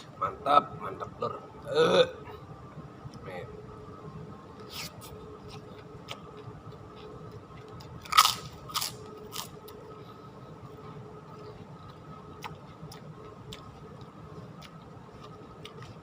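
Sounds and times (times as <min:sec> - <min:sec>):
loud crunching while eating: 0:04.6 - 0:09.8, 0:11.4 - 0:16.0
chewing clicks: 0:11.4 - 0:16.0.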